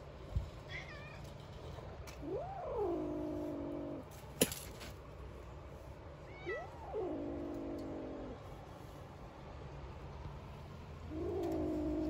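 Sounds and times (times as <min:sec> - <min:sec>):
cat meowing: 0:06.3 - 0:08.3.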